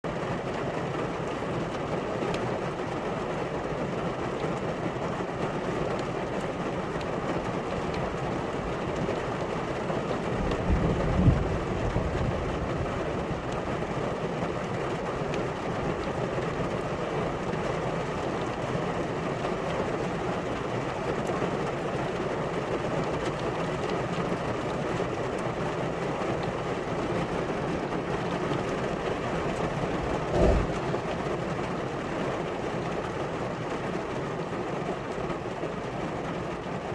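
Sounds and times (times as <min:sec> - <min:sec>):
steady rain falling: 0:00.0 - 0:36.9
low thud: 0:30.0 - 0:30.9.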